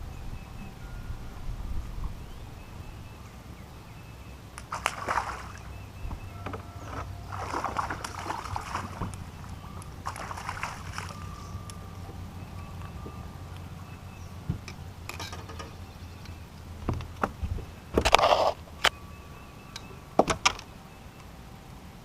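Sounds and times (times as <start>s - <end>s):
steady low rumble: 0.0s - 22.0s
water splashing and sloshing: 4.4s - 19.0s.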